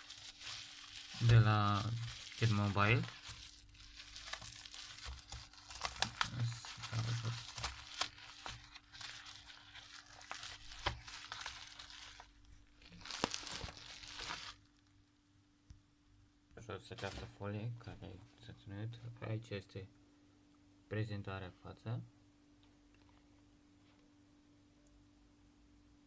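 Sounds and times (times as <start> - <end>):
plastic film crinkling and tearing: 0.0 - 14.7.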